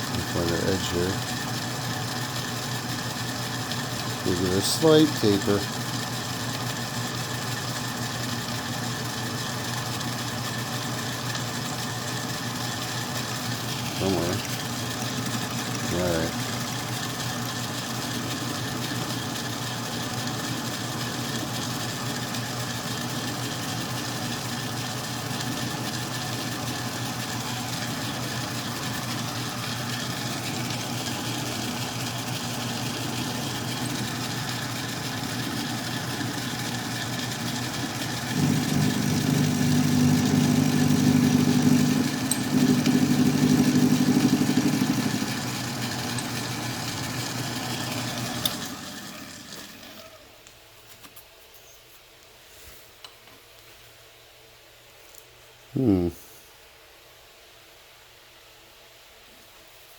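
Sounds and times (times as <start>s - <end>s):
metal lathe running: 0.0s - 50.2s
pitched hum: 30.4s - 50.0s.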